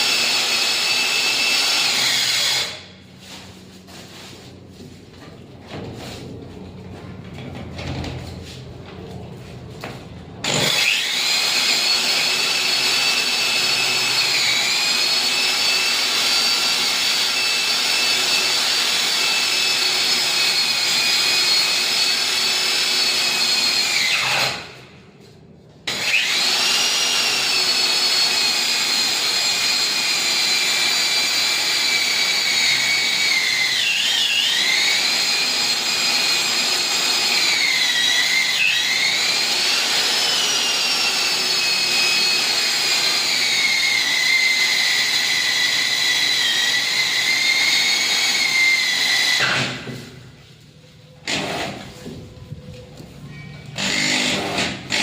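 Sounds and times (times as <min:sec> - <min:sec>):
core drill whining: 0:00.0 - 0:03.0, 0:10.4 - 0:24.8, 0:25.9 - 0:50.2, 0:51.2 - 0:52.2, 0:53.7 - 0:55.0.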